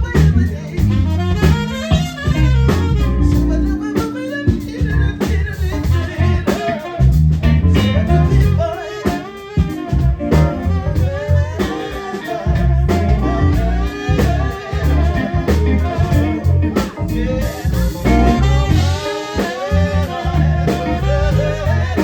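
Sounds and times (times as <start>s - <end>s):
wavering lead melody: 0.0s - 9.0s, 9.6s - 22.0s
live soul band playing: 0.0s - 22.0s.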